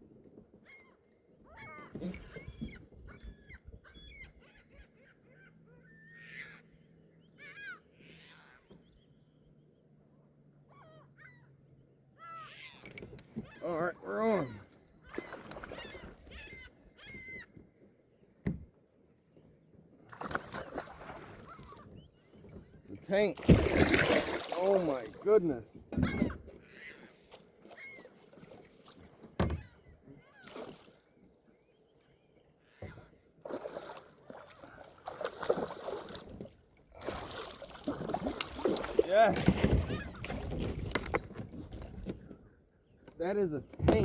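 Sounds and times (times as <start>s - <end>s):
gull calling: 0.6s - 9.0s, 10.7s - 17.6s, 21.2s - 22.0s, 23.0s - 28.3s, 32.6s - 33.2s, 37.1s - 40.6s
water splashing: 20.1s - 21.8s, 23.1s - 26.2s, 30.4s - 31.0s, 33.4s - 42.3s.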